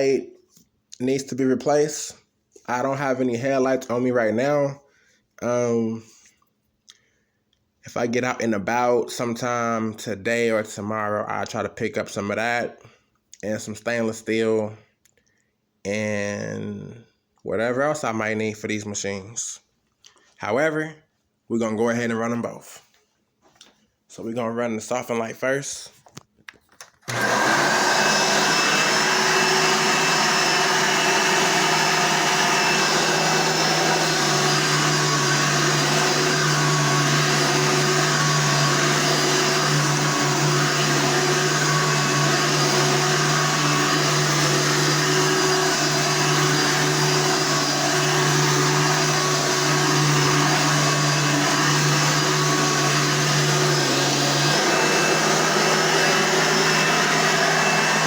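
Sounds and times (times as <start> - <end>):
vacuum cleaner running: 27.0 - 58.0.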